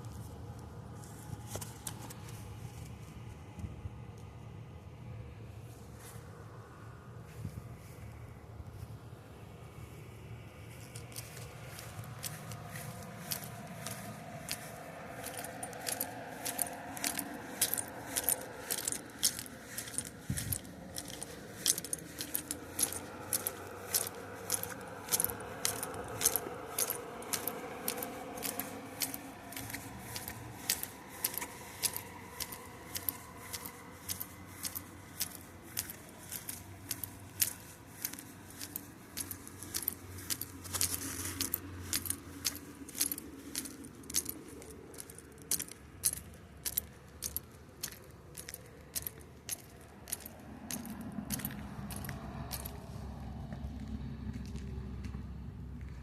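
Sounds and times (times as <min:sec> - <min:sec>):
sharp irregular clicks: 0:10.9 - 0:52.9.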